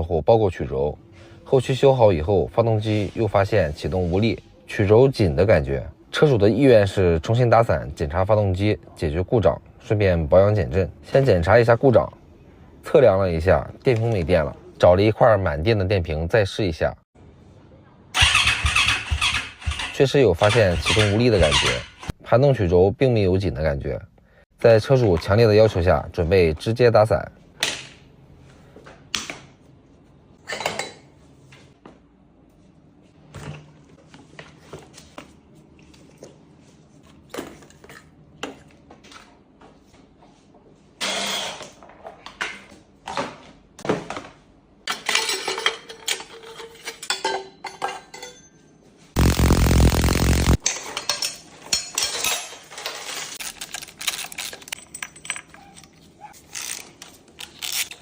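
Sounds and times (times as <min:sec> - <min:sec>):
loud burst of noise: 0:49.2 - 0:50.6
metal tools clinking: 0:50.6 - 0:56.9.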